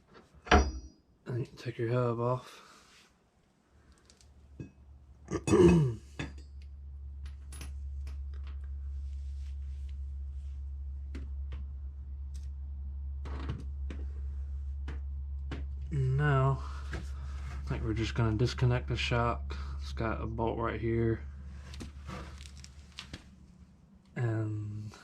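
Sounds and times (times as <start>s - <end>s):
steady low hum: 0.0s - 25.0s
metal clinking and knocking: 0.4s - 0.9s
person grunting: 5.3s - 6.0s.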